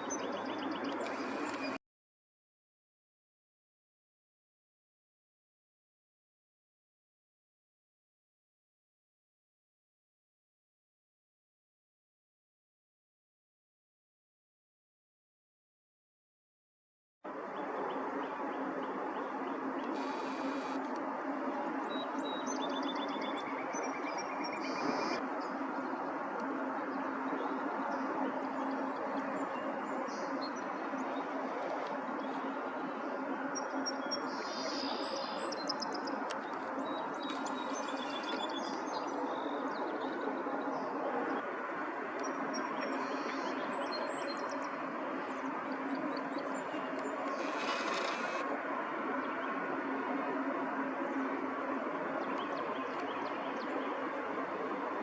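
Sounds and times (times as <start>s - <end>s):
small birds chirping: 0.0s - 1.8s, 33.8s - 39.1s, 45.9s - 48.4s
short high hiss: 47.3s - 48.4s.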